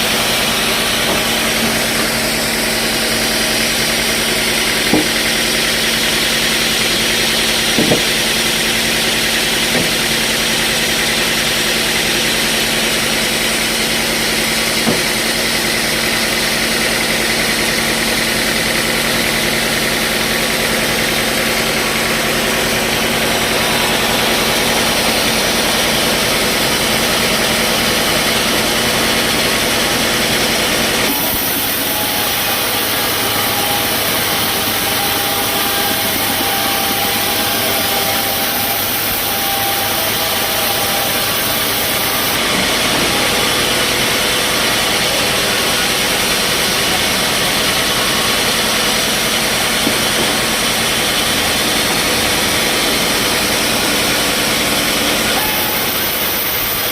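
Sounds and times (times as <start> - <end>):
sawmill machinery running: 0.0 - 56.9.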